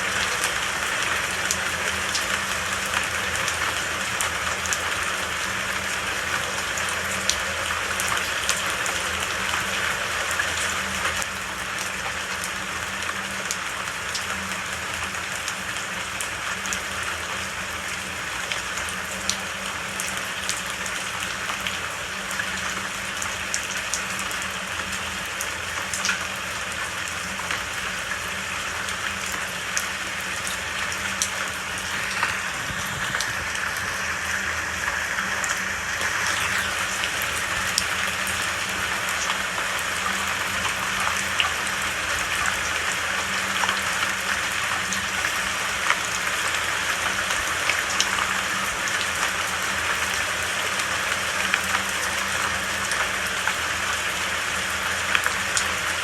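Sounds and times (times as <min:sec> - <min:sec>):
steady rain falling: 0:00.0 - 0:56.0
rain drop impacts: 0:28.2 - 0:50.2.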